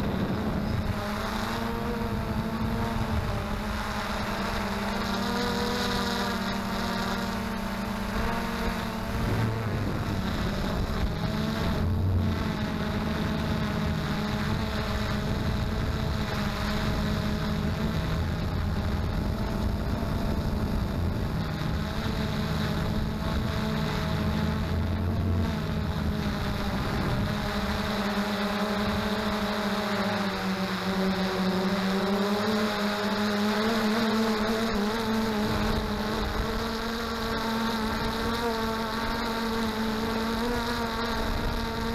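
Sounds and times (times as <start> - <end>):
wind buffeting microphone: 0.0 - 3.7, 8.4 - 21.5, 24.1 - 27.8
drone propellers humming: 0.0 - 41.9.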